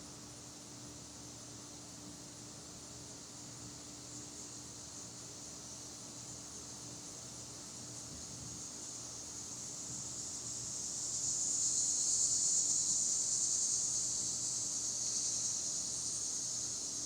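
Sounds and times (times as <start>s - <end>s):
insects buzzing: 9.6s - 17.0s.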